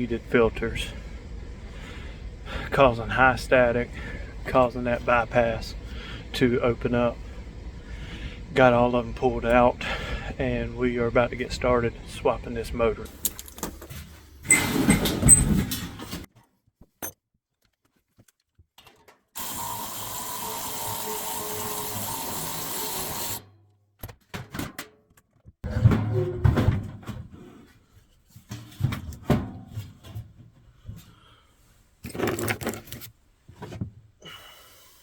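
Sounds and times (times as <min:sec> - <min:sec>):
cordless drill running: 0:19.4 - 0:23.4
metal parts clanking: 0:32.0 - 0:33.1.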